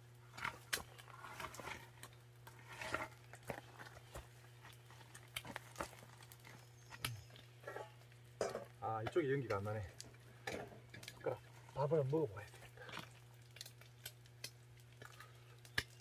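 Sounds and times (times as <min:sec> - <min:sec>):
footsteps crunching on dry ground: 0:02.7 - 0:07.0.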